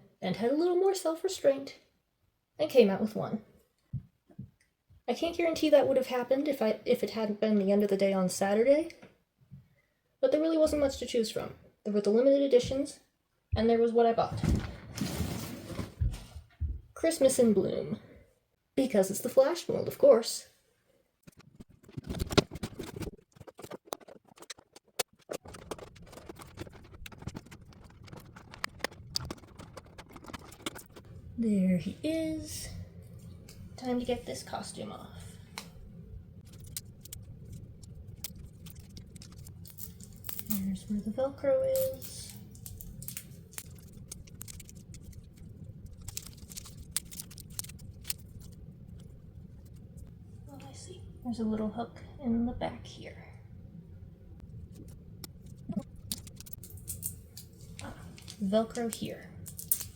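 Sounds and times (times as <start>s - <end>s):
small clicks and ticks: 21.2s - 31.1s, 36.4s - 40.7s, 41.8s - 50.1s, 54.8s - 59.9s
cardboard and plastic packaging crackling: 21.4s - 31.1s, 36.4s - 41.1s, 41.7s - 48.6s
plastic wrapping rustling: 21.4s - 31.2s, 36.4s - 41.0s, 41.7s - 50.0s
steady low hum: 25.4s - 59.9s.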